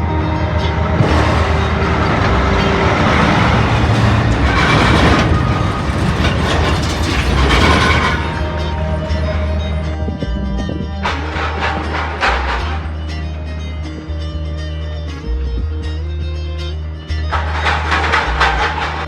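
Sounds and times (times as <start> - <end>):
heavy truck passing: 0.0 - 13.6.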